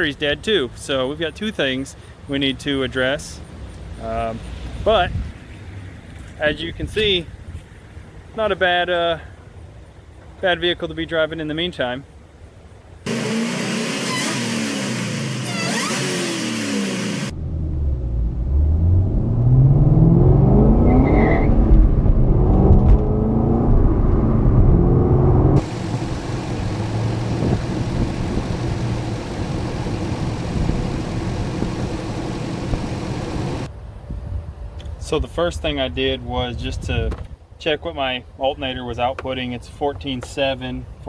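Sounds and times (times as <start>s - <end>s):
car engine revving: 13.1s - 33.7s.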